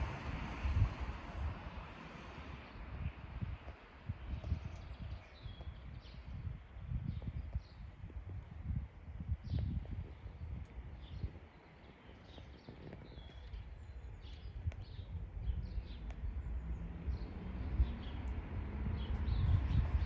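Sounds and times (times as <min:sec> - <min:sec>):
small birds chirping: 0:04.2 - 0:08.0, 0:09.4 - 0:18.4.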